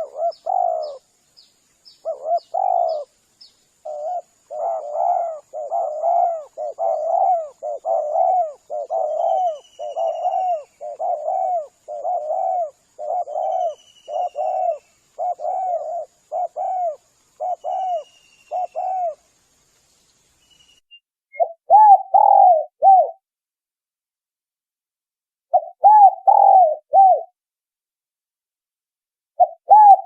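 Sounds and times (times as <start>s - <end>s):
dove cooing: 0.0s - 1.1s, 2.0s - 3.2s, 3.8s - 19.2s, 21.4s - 23.2s, 25.5s - 27.3s, 29.4s - 30.0s.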